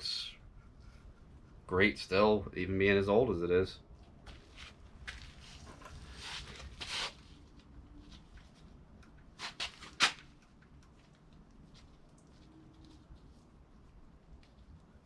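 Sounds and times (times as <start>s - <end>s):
rustling scrapes of parts: 5.2s - 7.4s.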